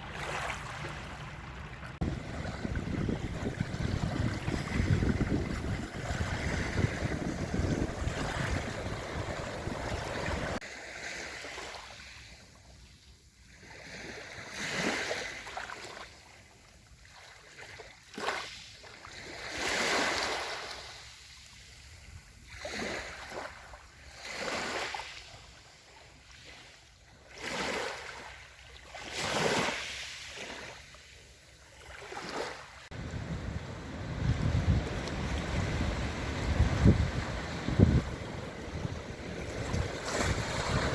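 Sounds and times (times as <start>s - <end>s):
sea waves breaking: 0.0s - 11.6s, 31.9s - 40.9s
wind buffeting microphone: 2.0s - 10.6s, 32.9s - 40.9s.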